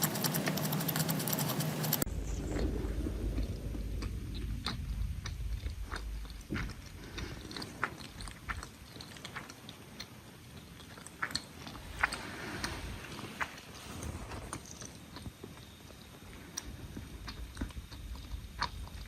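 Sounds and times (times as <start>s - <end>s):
chewing crunchy food: 0.0s - 19.0s.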